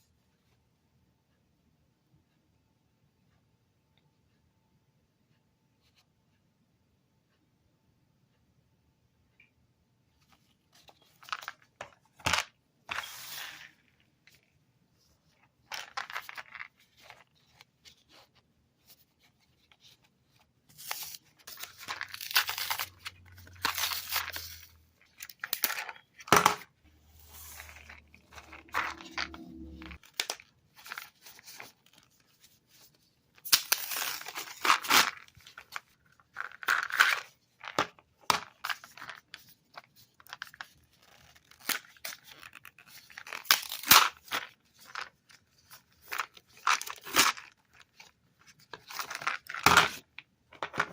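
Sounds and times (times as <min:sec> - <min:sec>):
packaging tearing and rustling: 0:20.8 - 0:26.0, 0:33.4 - 0:35.8, 0:40.2 - 0:45.1, 0:46.0 - 0:48.0.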